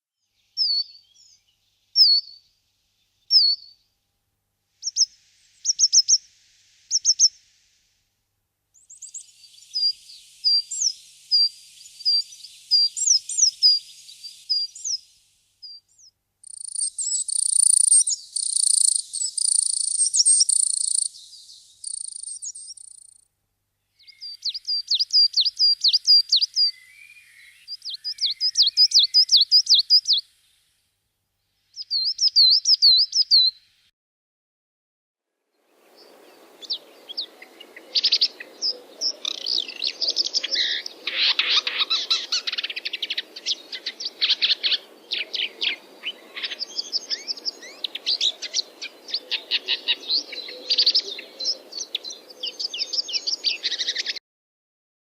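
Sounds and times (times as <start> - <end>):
light hiss: 4.6 - 31.8
high bird trill: 16.4 - 23.2, 36.6 - 54.2
songbirds chirping and singing: 24.0 - 30.2, 35.8 - 54.2.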